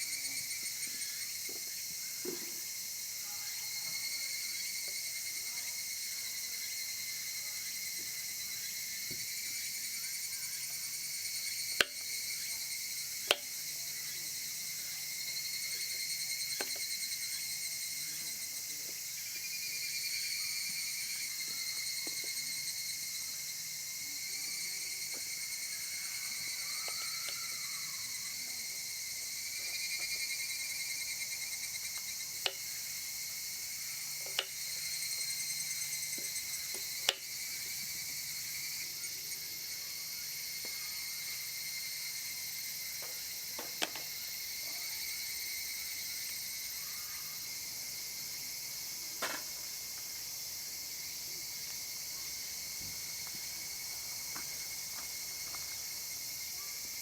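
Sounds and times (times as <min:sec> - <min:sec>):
insects chirring: 0:00.0 - 0:57.0.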